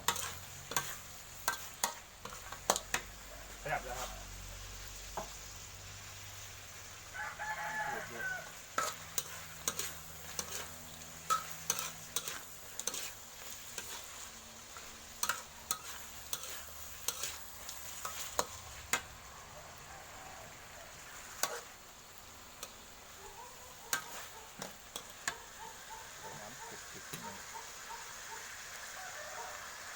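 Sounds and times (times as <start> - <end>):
utensil scraping and knocking pan: 0.0 - 3.0, 8.8 - 14.2, 14.8 - 19.1
food sizzling in a pan: 0.0 - 29.9.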